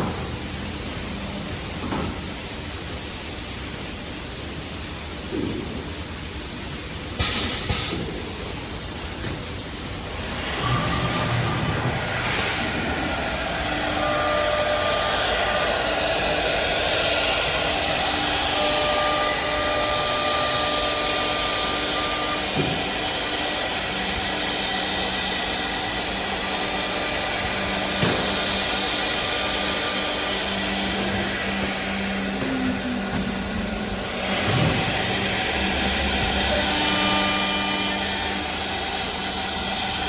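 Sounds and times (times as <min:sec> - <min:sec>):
low machine hum: 0:00.0 - 0:40.0
motor whine: 0:10.0 - 0:40.0
spindles hissing and cutting: 0:10.1 - 0:40.0.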